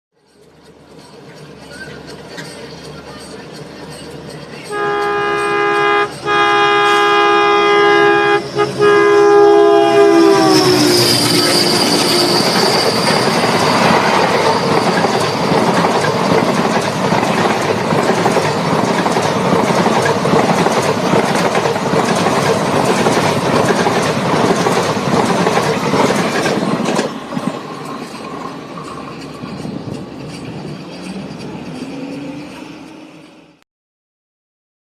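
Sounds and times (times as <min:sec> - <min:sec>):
wheels clacking over rail joints: 0:00.2 - 0:07.8, 0:09.4 - 0:33.4
train rumbling past: 0:00.2 - 0:33.6
locomotive horn: 0:04.7 - 0:13.0.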